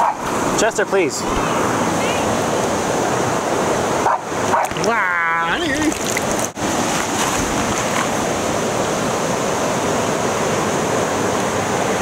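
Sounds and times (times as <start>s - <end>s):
river water rushing: 0.0s - 12.0s.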